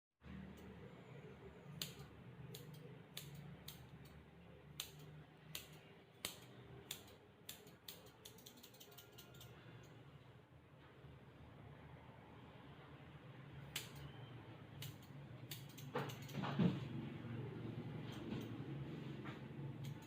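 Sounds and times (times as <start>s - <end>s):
grooming scissors snipping: 1.7s - 9.9s, 13.7s - 14.1s, 14.8s - 16.5s, 19.8s - 20.0s.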